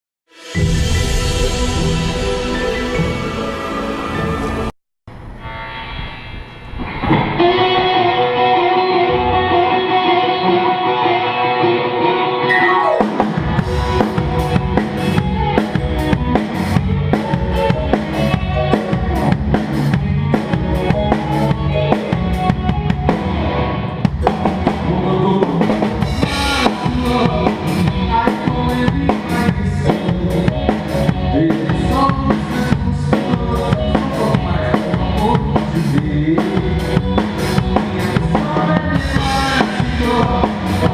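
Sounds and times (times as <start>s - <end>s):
drum kit beat: 12.5s - 23.4s, 24.1s - 40.9s.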